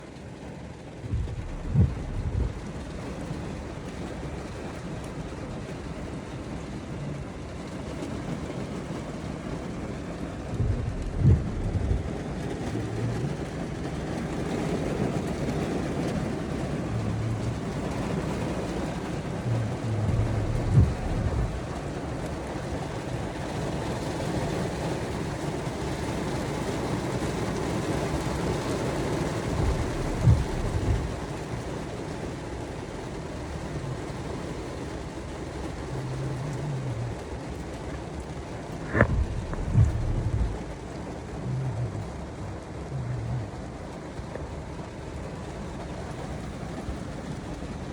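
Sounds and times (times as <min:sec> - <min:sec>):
steady rain: 0:00.0 - 0:47.9
low bumps or rumbles: 0:01.0 - 0:03.4, 0:10.4 - 0:13.3, 0:16.6 - 0:22.0, 0:29.3 - 0:31.4, 0:38.7 - 0:43.7.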